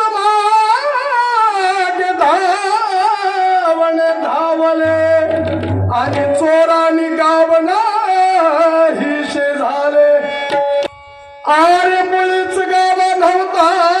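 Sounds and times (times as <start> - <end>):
instrumental accompaniment: 4.8 - 7.8.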